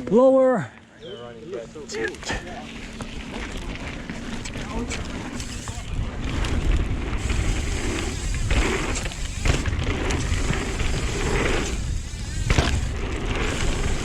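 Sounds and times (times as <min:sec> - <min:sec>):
bike tyres rumbling and rattling: 0:01.6 - 0:14.0
wind rushing on microphone: 0:04.9 - 0:14.0.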